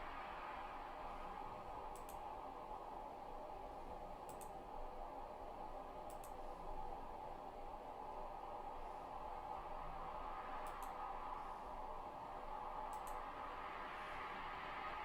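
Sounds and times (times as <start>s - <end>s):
soft steady wind: 0.0s - 15.0s
faint sharp double clicks: 1.9s - 2.2s, 4.3s - 4.6s, 6.1s - 6.4s, 12.9s - 13.2s.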